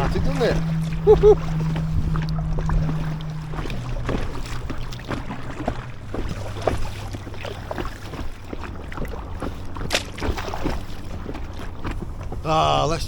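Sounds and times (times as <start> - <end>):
low steady hum: 0.0 - 9.3
waves splashing against kayak hull: 0.0 - 13.0.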